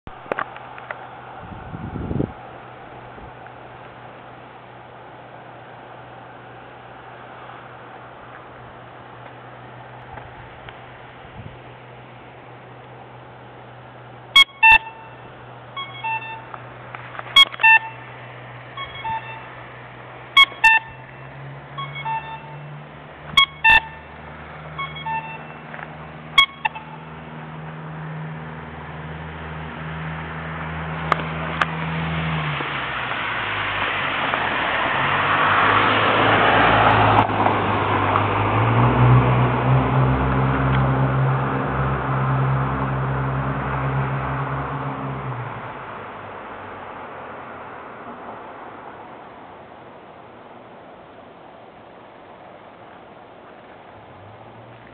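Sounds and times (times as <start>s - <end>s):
vehicle passing: 0.3s - 50.8s, 53.7s - 54.9s
pedestrian signal beeping: 14.4s - 18.1s, 18.7s - 19.6s, 20.3s - 27.1s.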